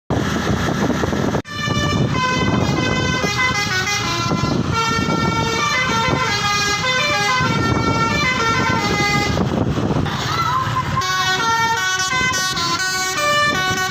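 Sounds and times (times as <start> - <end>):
engine and road noise: 0.1 - 13.9
bus air horn playing a tune: 1.5 - 9.5, 10.9 - 13.9.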